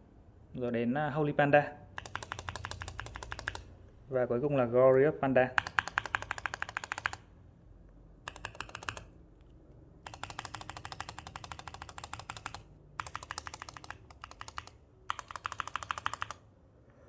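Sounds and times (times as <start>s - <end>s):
keyboard switch clicking: 2.0s - 3.7s, 5.6s - 7.2s, 8.3s - 9.1s, 10.1s - 16.4s.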